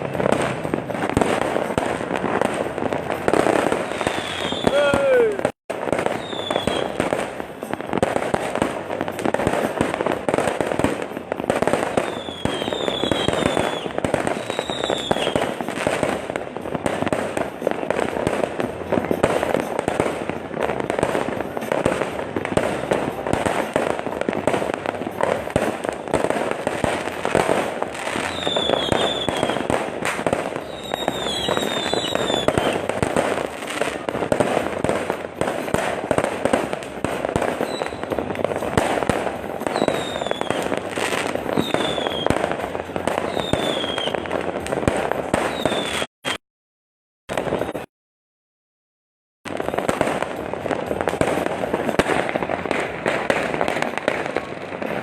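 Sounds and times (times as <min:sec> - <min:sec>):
fireworks crackling and banging: 0:00.0 - 0:46.4, 0:47.3 - 0:47.9, 0:49.5 - 0:55.0
falling firework whistles: 0:03.2 - 0:08.2, 0:10.3 - 0:16.3, 0:24.5 - 0:34.6, 0:37.2 - 0:38.1, 0:38.8 - 0:44.3, 0:44.9 - 0:46.4.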